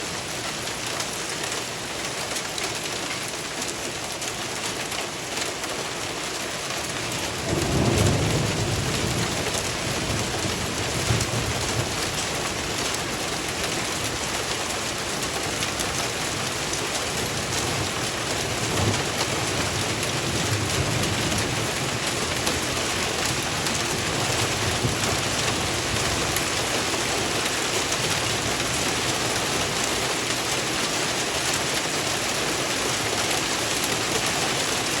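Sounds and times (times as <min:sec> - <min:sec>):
hail and rain pelting: 0:00.0 - 0:35.0
thunder rumbling: 0:07.4 - 0:12.9, 0:17.2 - 0:29.8.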